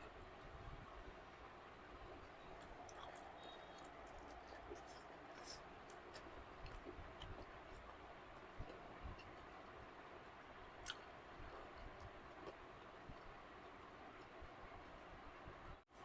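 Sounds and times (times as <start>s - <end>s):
chewing: 2.6s - 8.0s.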